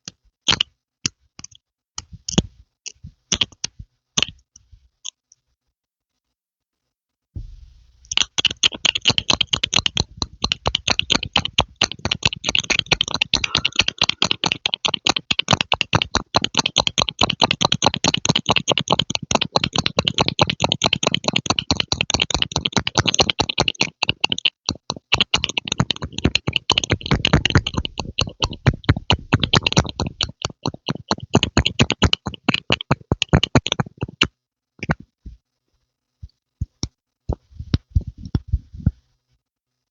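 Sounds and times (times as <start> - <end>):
pumping pops and clicks: 7.4 - 35.4.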